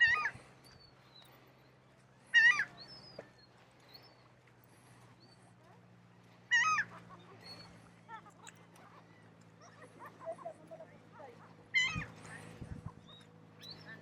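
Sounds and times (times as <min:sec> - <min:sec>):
animal whining calls: 0:00.0 - 0:00.8, 0:02.2 - 0:03.2, 0:06.5 - 0:07.9, 0:11.7 - 0:14.0.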